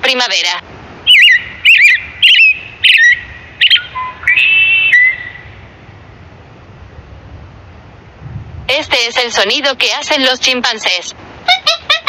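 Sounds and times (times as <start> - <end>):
robin singing: 1.1 - 5.6.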